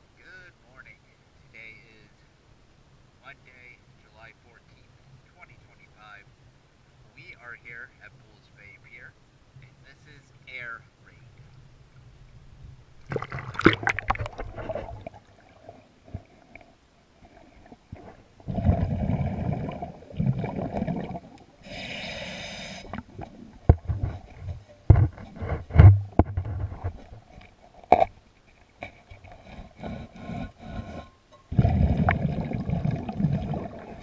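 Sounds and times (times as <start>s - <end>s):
exhaled bubbles rumbling: 13.0s - 21.6s, 22.8s - 28.1s, 31.5s - 34.0s
inhaled regulator hiss: 21.6s - 23.3s
sharp knocks and scrapes: 23.7s - 28.2s, 28.8s - 31.5s.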